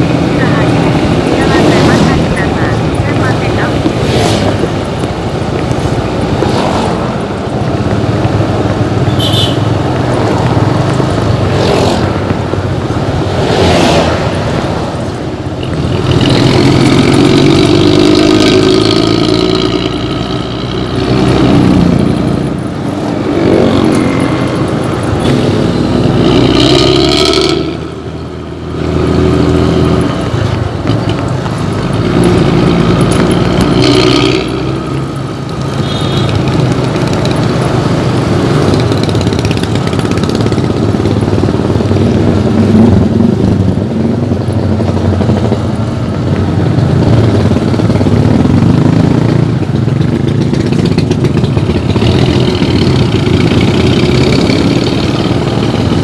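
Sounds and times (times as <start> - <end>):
diesel bus engine revving: 16.0 - 22.6.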